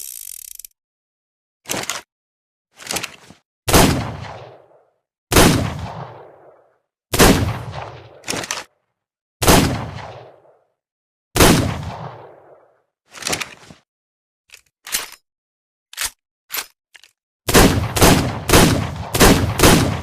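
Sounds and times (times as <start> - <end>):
revolver gunshots with echo: 3.7 - 8.4, 9.4 - 10.6, 11.4 - 12.7, 17.5 - 20.0.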